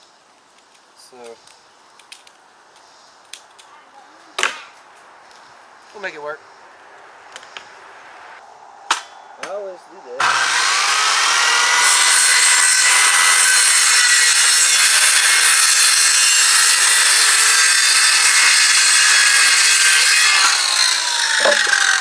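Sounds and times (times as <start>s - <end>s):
power saw cutting plywood: 10.2s - 22.0s.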